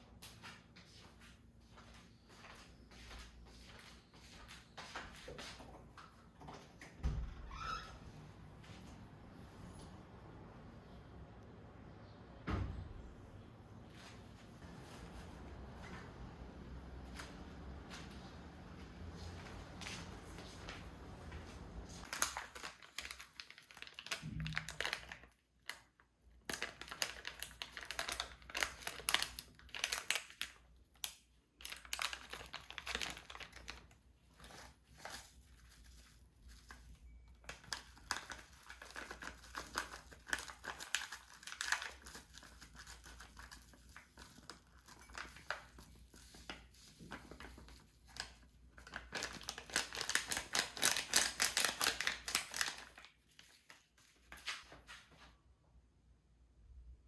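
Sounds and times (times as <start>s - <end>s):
crinkling and rustling: 13.9s - 55.4s.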